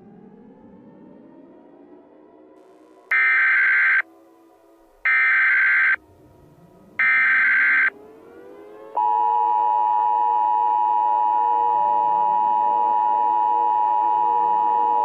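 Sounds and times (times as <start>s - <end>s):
two-tone attention signal: 3.1s - 4.0s, 5.1s - 6.0s, 7.0s - 7.9s
buzzing digital data tones: 7.0s - 7.9s.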